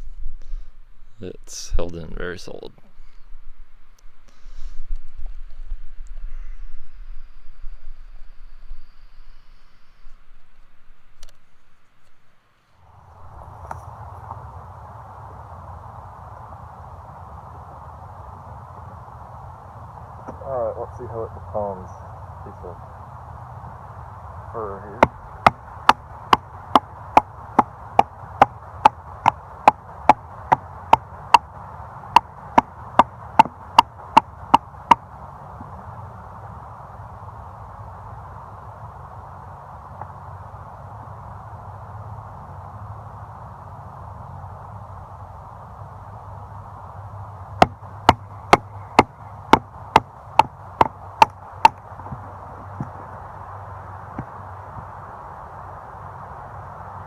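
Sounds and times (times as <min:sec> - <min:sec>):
knife chopping wood: 0:32.2 - 0:34.6, 0:47.6 - 0:52.2.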